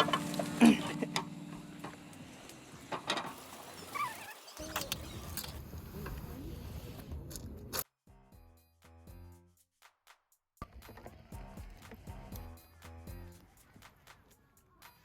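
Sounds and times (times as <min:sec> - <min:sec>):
faint outdoor ambience: 0:00.0 - 0:07.8.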